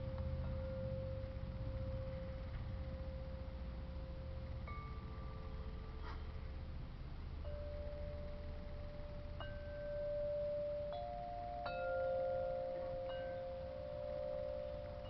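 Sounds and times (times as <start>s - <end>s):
wind chimes ringing: 7.4s - 15.0s.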